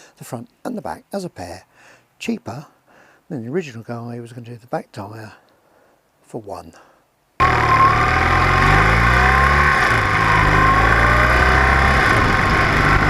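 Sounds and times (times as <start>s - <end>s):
road and wind noise: 7.4s - 13.0s
vehicle engine accelerating: 7.4s - 13.0s.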